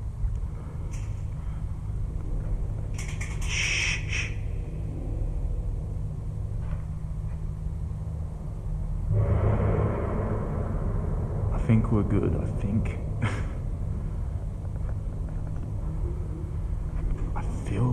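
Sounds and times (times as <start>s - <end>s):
sharp hissy strokes: 3.4s - 4.4s.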